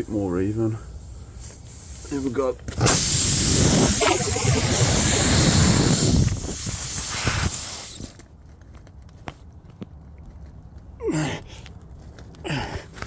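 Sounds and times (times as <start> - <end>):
air hissing from punctured tyre: 0.0 - 8.2.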